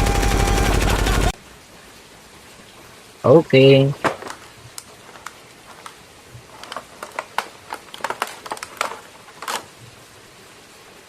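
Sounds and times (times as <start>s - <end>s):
plastic packaging clicks and crinkles: 4.0s - 9.8s.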